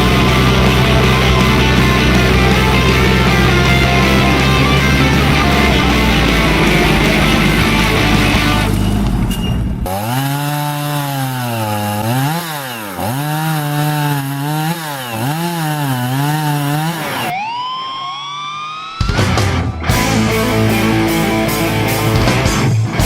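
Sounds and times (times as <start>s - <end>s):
high rising whine: 0.0s - 9.9s
vehicle engine revving: 0.0s - 17.3s.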